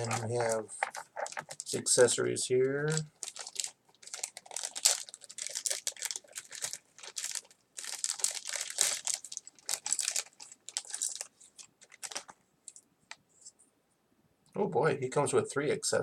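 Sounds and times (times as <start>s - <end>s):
plastic packaging crinkling: 0.0s - 12.8s.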